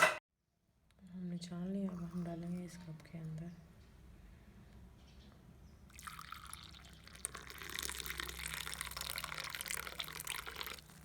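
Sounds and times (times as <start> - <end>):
tea pouring into a cup: 1.8 - 2.8, 5.9 - 11.0.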